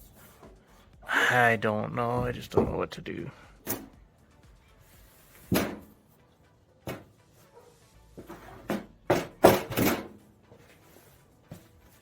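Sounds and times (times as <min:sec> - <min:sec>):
background music: 0:00.0 - 0:12.0
objects knocking and clunking: 0:02.1 - 0:04.0, 0:05.4 - 0:06.0, 0:06.8 - 0:07.3, 0:08.2 - 0:10.8.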